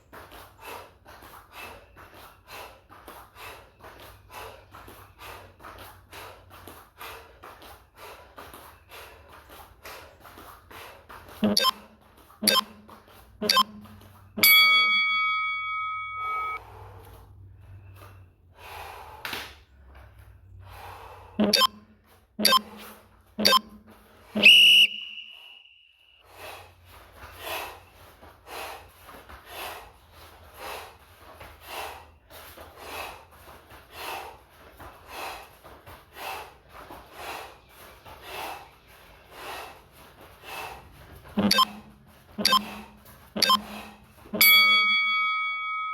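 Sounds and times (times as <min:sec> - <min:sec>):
heavy breathing: 0:00.1 - 0:12.3, 0:16.2 - 0:24.4, 0:26.2 - 0:45.0
timer beep: 0:11.4 - 0:11.8, 0:12.4 - 0:12.8, 0:13.4 - 0:16.6, 0:21.4 - 0:21.8, 0:22.4 - 0:22.8, 0:23.4 - 0:23.8, 0:24.4 - 0:25.6, 0:41.4 - 0:45.9
timer ticks: 0:11.4 - 0:11.8, 0:12.4 - 0:12.8, 0:13.4 - 0:13.8, 0:14.4 - 0:16.6, 0:21.4 - 0:21.8, 0:22.4 - 0:22.8, 0:23.4 - 0:23.8, 0:41.4 - 0:41.8, 0:42.4 - 0:42.8, 0:43.4 - 0:43.7, 0:44.3 - 0:45.9.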